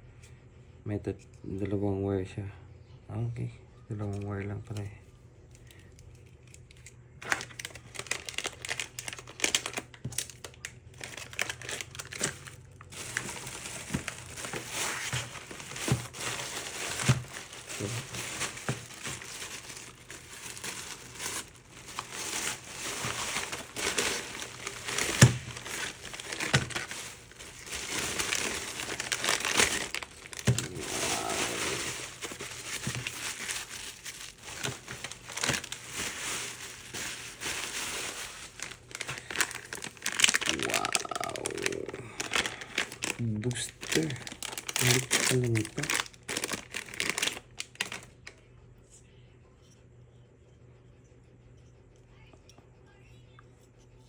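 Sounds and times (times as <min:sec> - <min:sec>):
packaging crinkling and rustling: 0:05.5 - 0:48.4.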